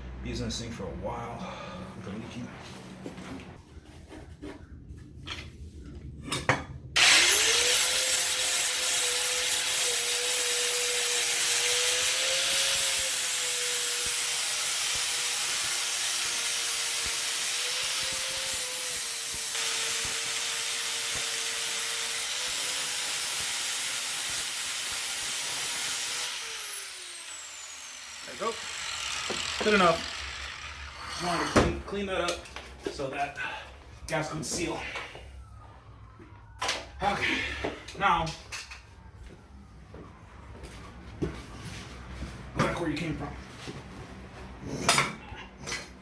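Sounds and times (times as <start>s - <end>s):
rotary power tool whining: 7.0s - 31.8s.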